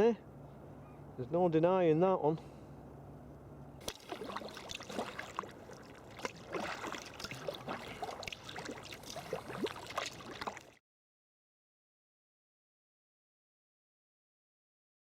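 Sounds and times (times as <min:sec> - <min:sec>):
water splashing and gurgling: 0:03.8 - 0:10.8.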